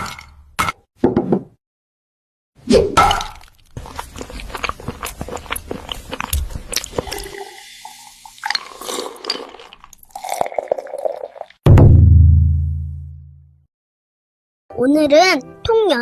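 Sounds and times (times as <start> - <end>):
animal chewing and crunching: 3.4 - 7.3.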